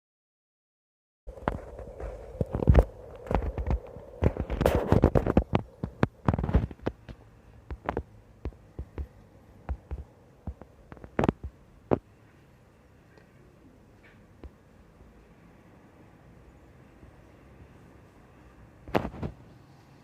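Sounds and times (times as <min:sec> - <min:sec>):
irregular knocks and rubs: 0:01.4 - 0:12.0.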